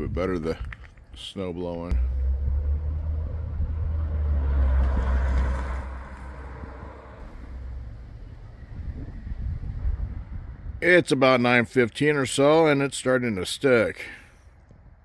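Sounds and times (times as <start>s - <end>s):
wind buffeting microphone: 0.0s - 1.0s, 1.9s - 10.9s.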